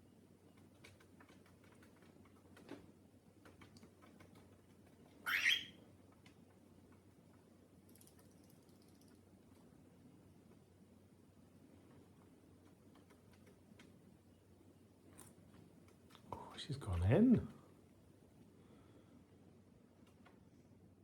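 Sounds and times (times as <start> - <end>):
cockatiel harsh call: 5.2 - 5.8.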